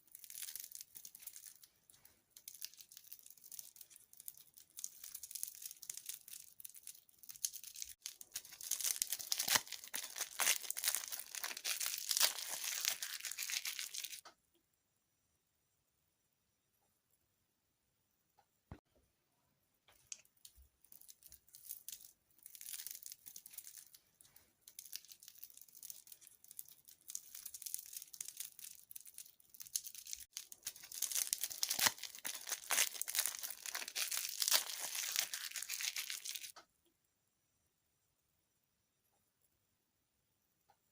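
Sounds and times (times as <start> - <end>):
packaging crinkling and tearing: 0.0 - 1.7, 2.3 - 14.2, 20.4 - 24.0, 24.6 - 36.5.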